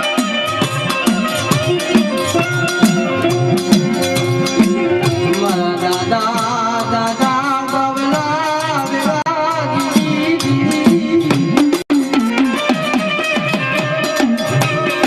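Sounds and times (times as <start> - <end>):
wavering lead melody: 0.0 - 7.4
drum and rattle percussion: 0.0 - 15.0.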